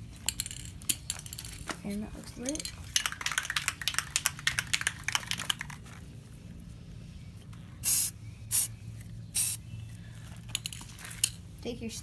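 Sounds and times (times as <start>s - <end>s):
spray can rattling: 2.9s - 5.8s, 7.8s - 8.7s, 9.4s - 9.6s
spray can hissing: 7.8s - 8.7s, 9.4s - 9.6s.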